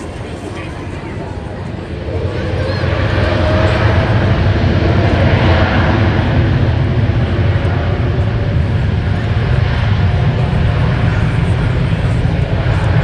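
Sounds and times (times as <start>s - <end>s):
jet engines roaring: 0.0s - 13.0s.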